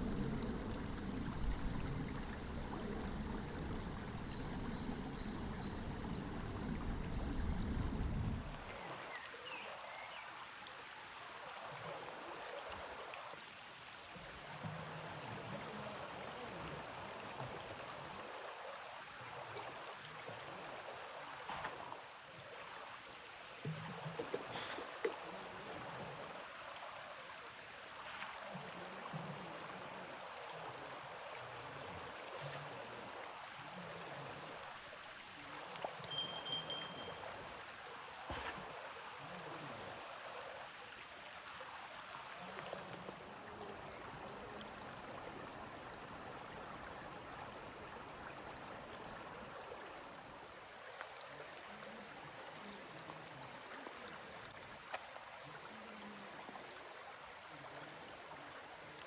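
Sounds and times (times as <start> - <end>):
brief high tone: 36.1 - 37.3.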